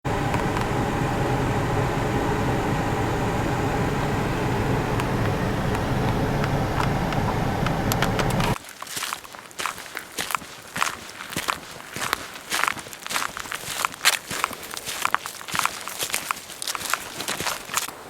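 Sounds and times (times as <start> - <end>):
vehicle engine and road rumble: 0.0 - 8.6.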